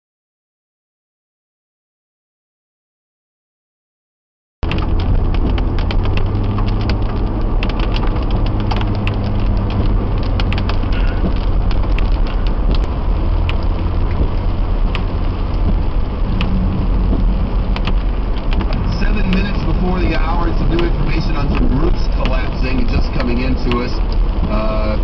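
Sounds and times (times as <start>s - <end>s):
car engine and road noise: 4.6s - 25.0s
raindrops ticking on windshield: 4.6s - 25.0s.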